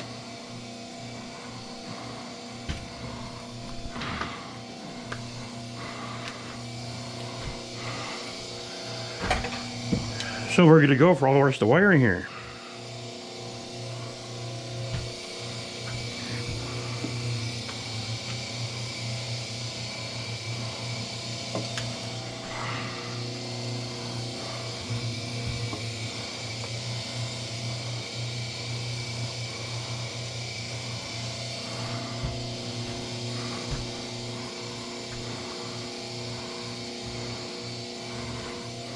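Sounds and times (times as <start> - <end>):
wire stripping machine motor hum: 0.0 - 38.9.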